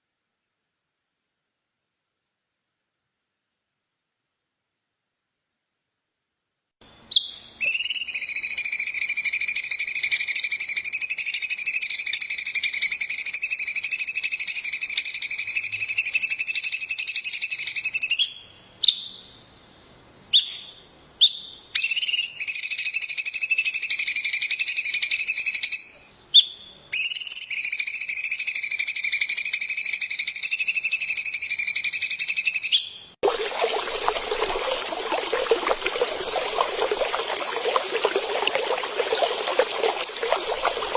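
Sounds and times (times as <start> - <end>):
water trickling: 33.2 - 40.9.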